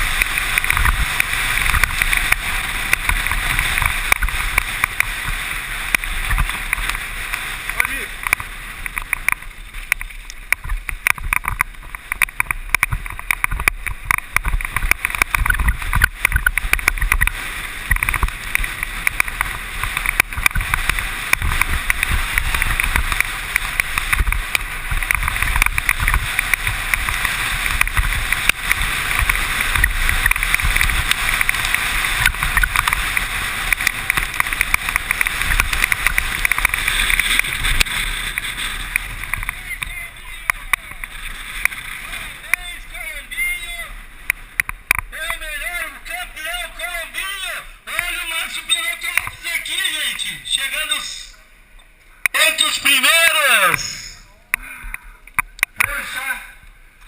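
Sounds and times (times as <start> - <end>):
wind buffeting microphone: 0.0 - 42.9
bike rattling: 0.0 - 50.6.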